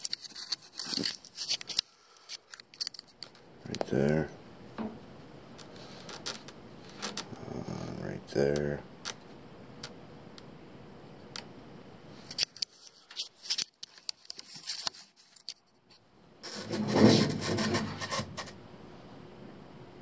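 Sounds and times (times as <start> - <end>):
rubbing and scraping handling noises: 0.0 - 4.2, 5.6 - 7.4, 12.2 - 18.6.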